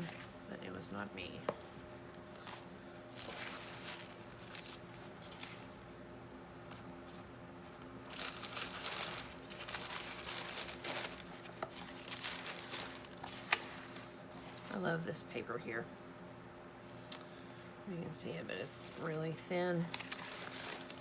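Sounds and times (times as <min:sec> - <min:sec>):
paper rustling and crinkling: 0:01.4 - 0:05.8, 0:06.6 - 0:14.8, 0:18.9 - 0:21.0.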